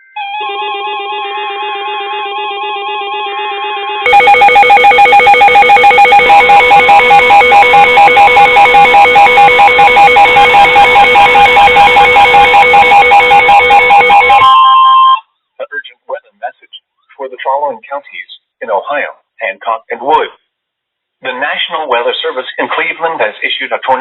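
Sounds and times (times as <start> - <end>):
warbling electronic alarm tone: 4.0 - 15.2
high two-tone data bursts: 4.1 - 14.6
rapidly pulsing loud beep: 4.1 - 14.6.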